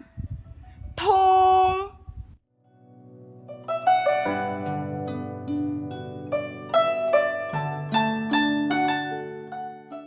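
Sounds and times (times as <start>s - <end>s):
plucked string melody: 2.5s - 10.0s.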